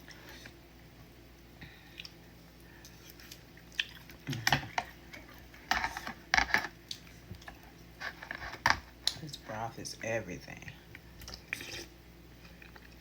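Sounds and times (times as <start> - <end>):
slurping and smacking: 11.2 - 12.0.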